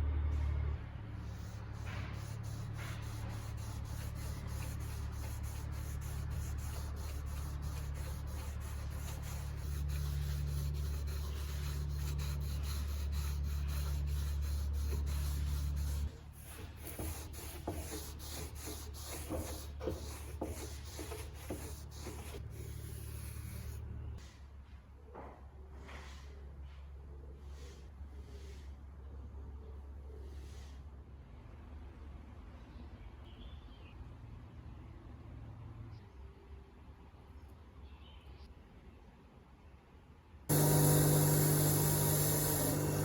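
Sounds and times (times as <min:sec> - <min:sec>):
sanding a surface: 0:01.2 - 0:23.8, 0:40.5 - 0:43.0
scratchy rubbing strokes: 0:01.2 - 0:23.8, 0:40.5 - 0:43.0
steady low hum: 0:40.5 - 0:43.0.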